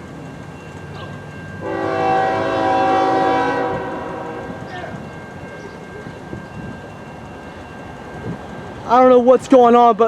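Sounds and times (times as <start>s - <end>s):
train rumbling: 0.0s - 10.0s
locomotive air horn: 1.6s - 4.7s.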